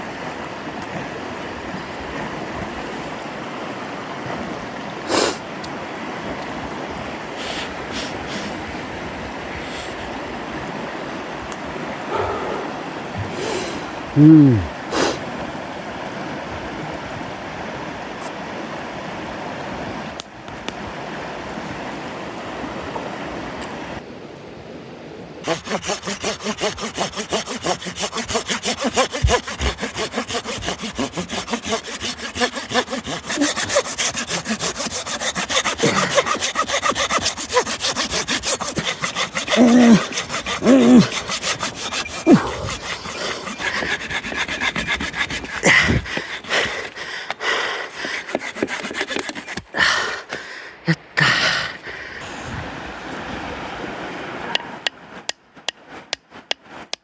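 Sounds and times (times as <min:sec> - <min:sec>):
hand saw cutting wood: 0:12.1 - 0:12.7, 0:25.4 - 0:50.0.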